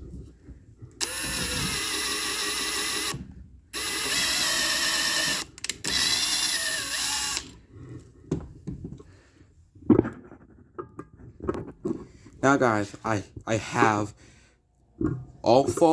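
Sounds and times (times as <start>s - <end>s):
cordless drill boring: 1.0s - 7.6s
knocks and clatter of handling: 8.2s - 9.2s, 9.8s - 12.4s.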